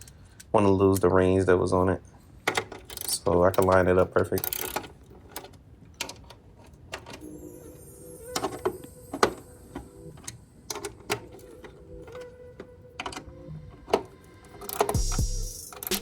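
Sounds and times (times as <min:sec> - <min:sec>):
car parts clicking and knocking: 0:02.4 - 0:07.2.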